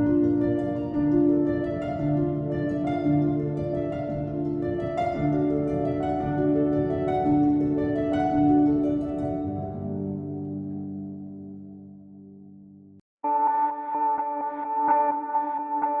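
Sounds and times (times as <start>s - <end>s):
gentle harp-like music: 0.0s - 12.4s.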